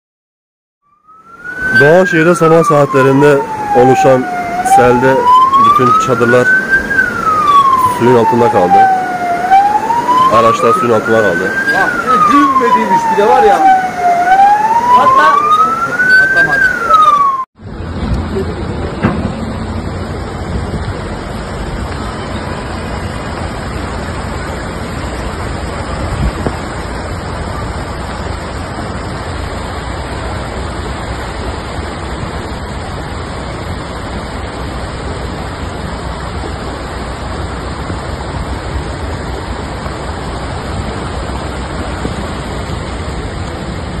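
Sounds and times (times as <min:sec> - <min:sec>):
floodwater rushing: 0:01.1 - 0:44.0.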